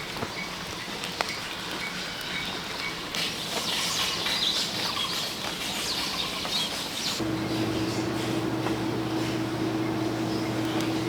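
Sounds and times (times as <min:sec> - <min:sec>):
small birds chirping: 0:00.1 - 0:08.1.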